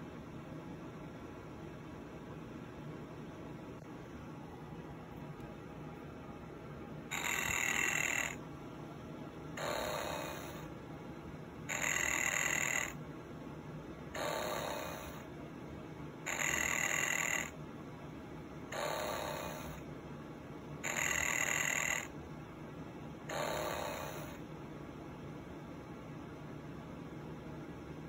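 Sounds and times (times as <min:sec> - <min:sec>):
plush toy electronic snore: 0:07.1 - 0:08.4, 0:09.6 - 0:10.7, 0:11.7 - 0:13.0, 0:14.1 - 0:15.3, 0:16.3 - 0:17.6, 0:18.7 - 0:19.8, 0:20.8 - 0:22.1, 0:23.3 - 0:24.4.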